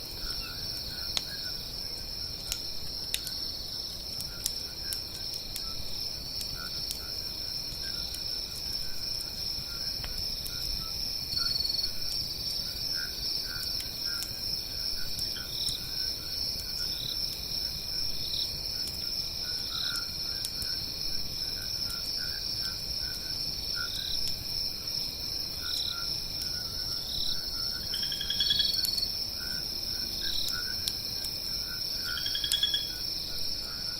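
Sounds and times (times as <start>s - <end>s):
campfire crackling: 0.0s - 33.9s
crickets and insects chirping: 0.0s - 33.9s
rising insect call: 25.6s - 33.9s.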